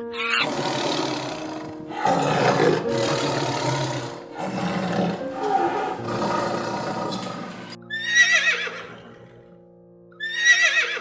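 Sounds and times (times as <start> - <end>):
background music: 0.0 - 11.0
big cat roaring: 0.2 - 7.8.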